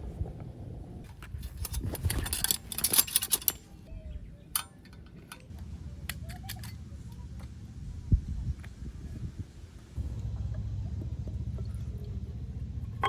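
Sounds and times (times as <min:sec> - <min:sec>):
light clinks and rattles: 0:01.1 - 0:03.8, 0:04.4 - 0:07.7
low steady rumble: 0:05.5 - 0:13.0.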